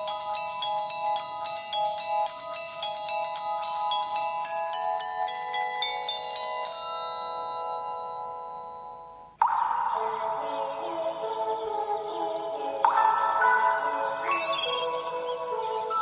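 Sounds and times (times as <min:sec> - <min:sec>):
different phone ringtone: 0:00.0 - 0:09.8
phone ringtone melody: 0:00.0 - 0:16.0.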